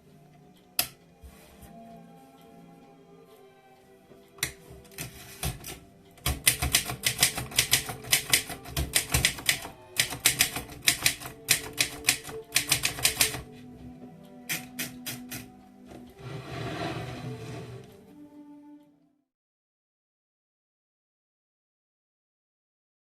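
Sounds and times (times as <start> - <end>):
background music: 0.0 - 19.3
manual typewriter keystrokes: 4.9 - 13.5, 14.5 - 15.6.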